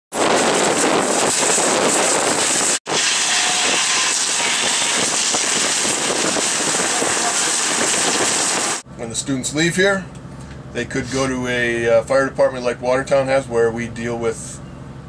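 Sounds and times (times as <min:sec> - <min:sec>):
loud rushing fire: 0:00.1 - 0:08.8.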